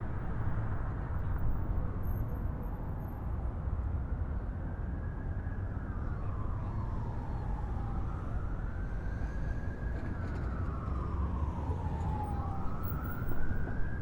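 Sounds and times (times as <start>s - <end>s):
road traffic rumble: 5.8s - 14.0s.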